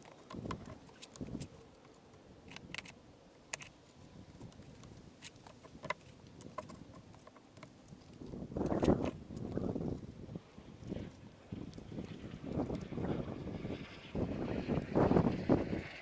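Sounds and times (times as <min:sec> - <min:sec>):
light clicks and taps: 0:00.0 - 0:10.0.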